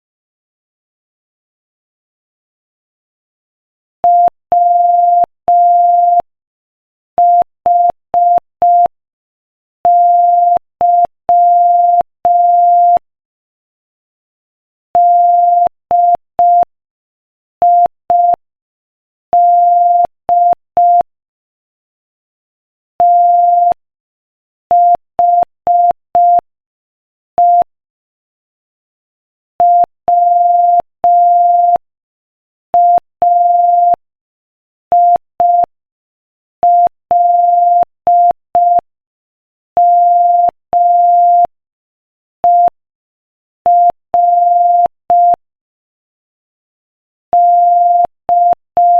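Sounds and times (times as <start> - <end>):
morse code beeps: 23.0 - 23.8, 27.4 - 27.7, 29.6 - 31.8, 32.8 - 34.0, 34.9 - 35.7, 36.6 - 38.8, 39.8 - 41.5, 42.4 - 42.8, 43.7 - 45.4, 47.3 - 48.9.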